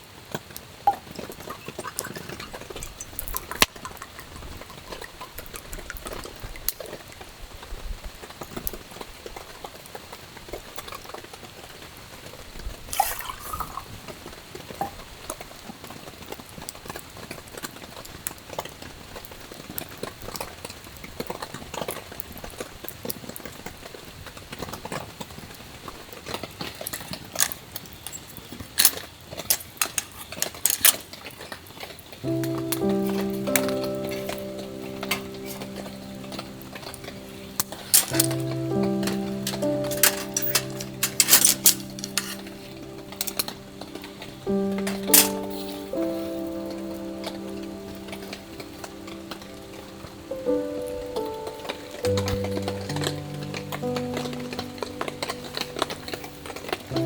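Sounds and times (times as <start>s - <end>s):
campfire crackling and popping: 41.8s - 57.0s.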